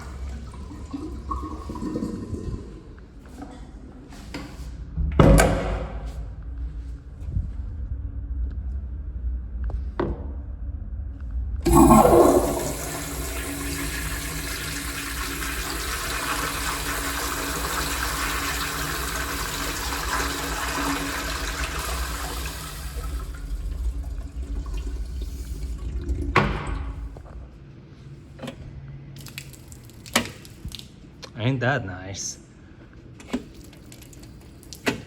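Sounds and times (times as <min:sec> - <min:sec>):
toilet flushing: 0:00.0 - 0:03.4, 0:11.6 - 0:27.4.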